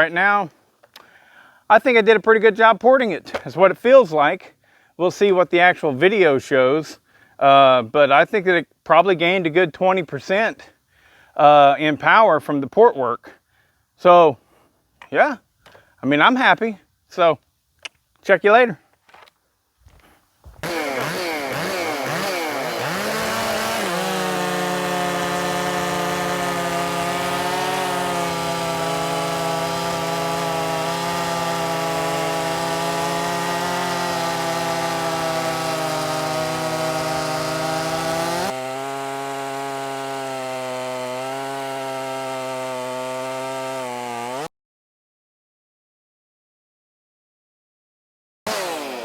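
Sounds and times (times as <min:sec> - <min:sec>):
chainsaw running flat out: 0:20.6 - 0:44.5, 0:48.5 - 0:49.0.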